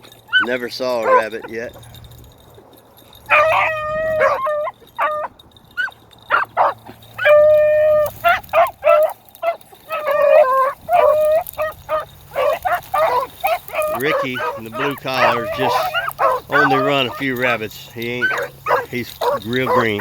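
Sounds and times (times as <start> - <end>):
dogs barking: 0.0 - 2.0, 3.1 - 20.0
beagles baying: 0.0 - 20.0.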